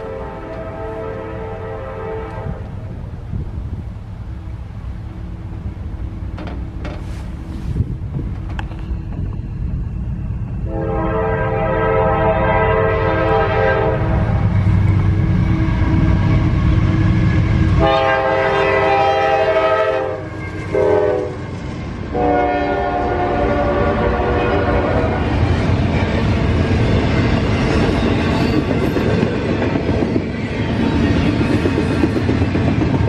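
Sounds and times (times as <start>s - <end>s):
train air horn blasts: 0.0s - 2.8s, 10.6s - 14.6s, 17.7s - 21.5s, 22.1s - 25.2s
locomotive rumble: 0.0s - 33.0s
train cars clattering past: 5.1s - 12.1s, 13.0s - 33.0s.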